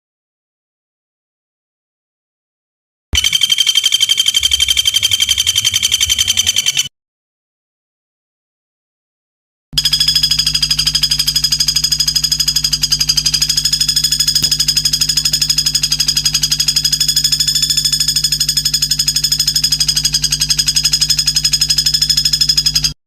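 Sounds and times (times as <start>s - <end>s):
high-pitched pulsing bird trill: 3.2s - 6.9s, 12.2s - 23.0s.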